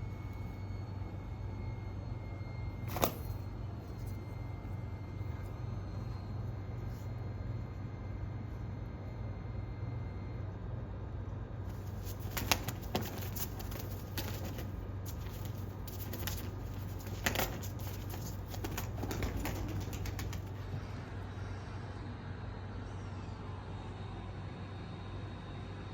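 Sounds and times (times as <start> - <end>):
steady low hum: 0.0 - 25.9
bird wings flapping: 2.8 - 3.4, 11.7 - 20.9.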